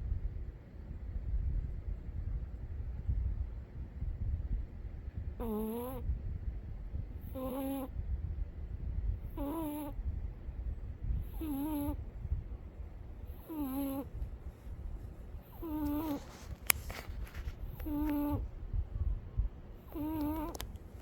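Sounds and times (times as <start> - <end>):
low steady rumble: 0.0 - 21.0
cat snoring whistle: 5.4 - 6.0, 7.3 - 7.9, 9.3 - 10.0, 11.2 - 12.0, 13.3 - 14.1, 15.5 - 16.4, 17.8 - 18.4, 19.9 - 20.6.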